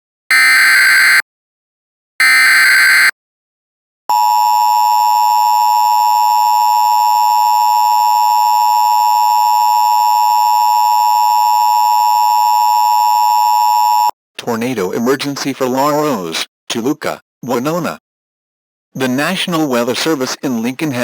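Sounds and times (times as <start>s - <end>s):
two-tone alarm: 0.3s - 1.2s, 2.2s - 3.2s, 4.1s - 14.1s.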